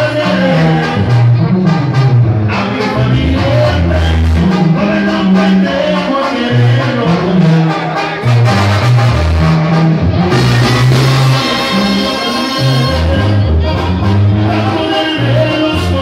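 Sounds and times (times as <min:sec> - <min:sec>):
bass line: 0:00.0 - 0:16.0
latin band music with brass: 0:00.0 - 0:16.0
steady percussion: 0:08.5 - 0:13.0.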